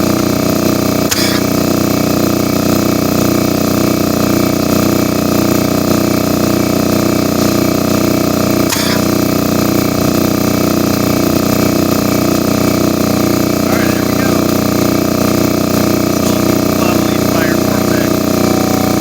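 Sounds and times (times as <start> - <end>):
air compressor running: 0.0 - 19.0
sharp click: 1.1 - 1.4, 8.7 - 9.1.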